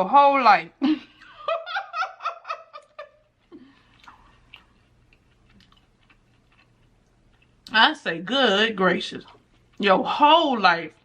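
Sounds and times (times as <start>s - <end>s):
person laughing: 0.8s - 3.2s
wet mouth clicks of chewing: 3.4s - 7.8s.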